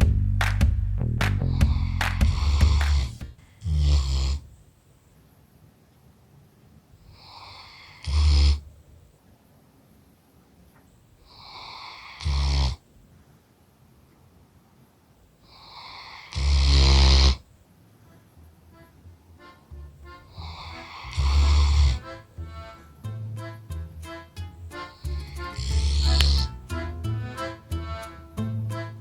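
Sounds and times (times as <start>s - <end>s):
dog snoring loudly: 1.5s - 4.5s, 7.2s - 8.6s, 11.3s - 12.8s, 15.6s - 17.4s, 20.3s - 22.0s, 25.5s - 26.5s.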